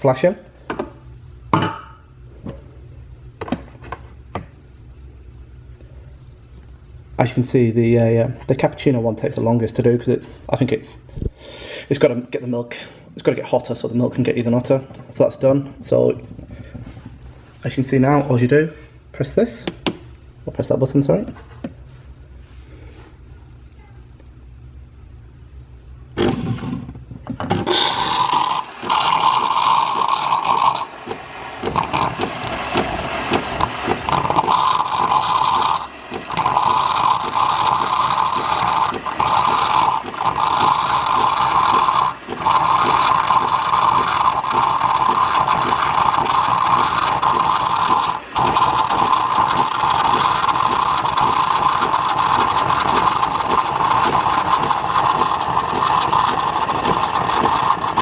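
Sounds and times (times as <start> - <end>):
coffee machine hissing: 26.0 - 58.0.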